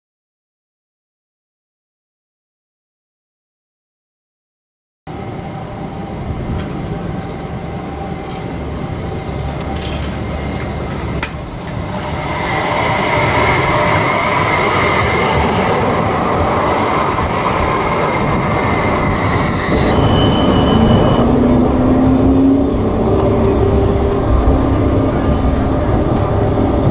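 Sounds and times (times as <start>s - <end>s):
passenger train on rails: 5.1s - 26.9s
high wheel squeal: 11.8s - 24.1s
brief high tone: 19.7s - 22.8s.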